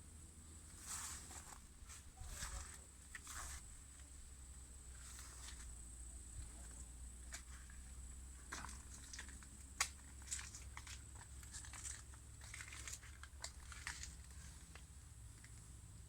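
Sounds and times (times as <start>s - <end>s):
crackling and rustling clicks: 8.5s - 15.7s.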